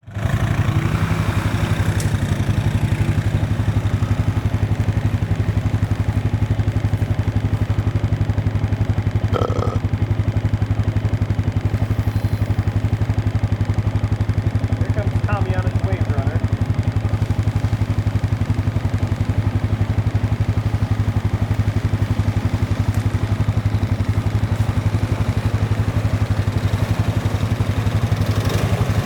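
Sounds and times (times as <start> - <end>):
vehicle engine running: 0.0 - 29.0
person belching: 9.3 - 9.9.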